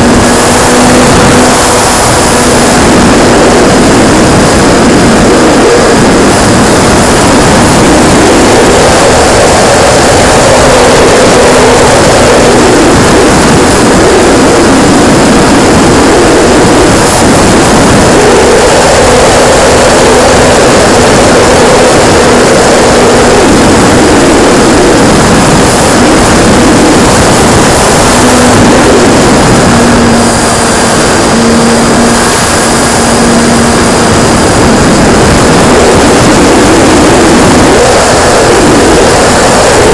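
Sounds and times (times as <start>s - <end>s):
model plane motor and propeller: 0.0s - 39.9s
rushing wind noise: 0.0s - 39.9s.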